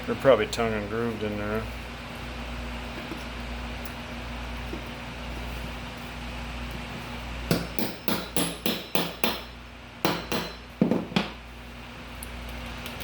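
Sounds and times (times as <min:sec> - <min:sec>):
hammer striking pry bar: 0:07.5 - 0:11.3.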